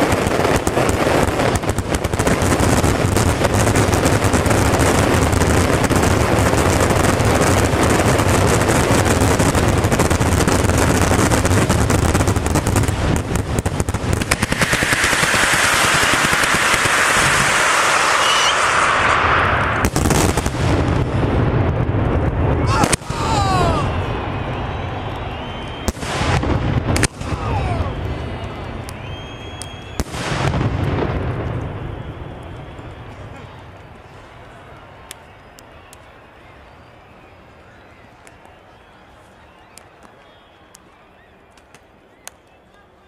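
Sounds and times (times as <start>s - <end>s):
loud firework hissing: 0.0s - 21.4s
firecracker bangs and crackles: 0.0s - 36.1s.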